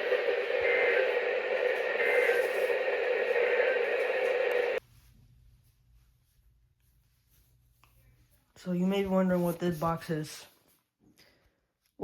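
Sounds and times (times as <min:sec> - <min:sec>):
radio static hiss: 0:00.0 - 0:04.8.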